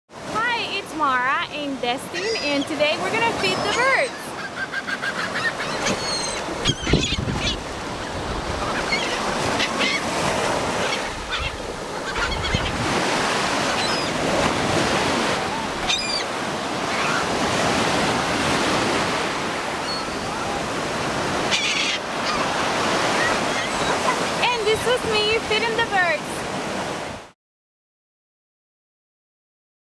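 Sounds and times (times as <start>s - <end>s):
surf washing: 0.2s - 27.3s
seagulls calling: 1.4s - 18.6s, 19.6s - 26.3s.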